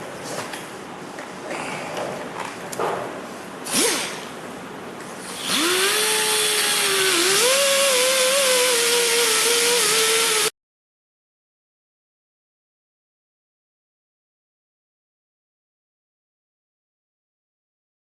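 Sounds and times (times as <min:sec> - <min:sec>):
power grinder whining: 0:05.4 - 0:10.5.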